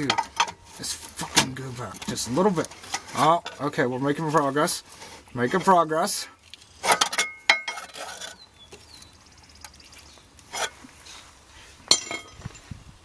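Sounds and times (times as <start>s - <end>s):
crowbar clinking on metal: 6.9s - 8.3s, 11.9s - 12.4s.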